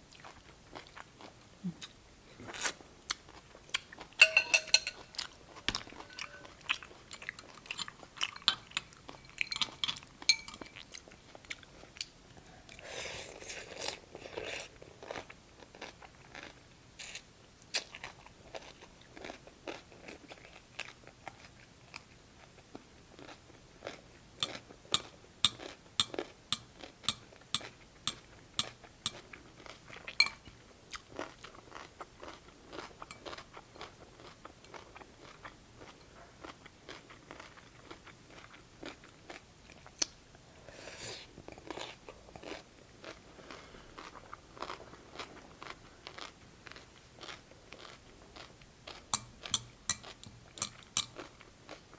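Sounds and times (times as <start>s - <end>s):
crunching on cucumber: 13.3s - 21.6s, 30.9s - 40.1s, 41.5s - 51.9s.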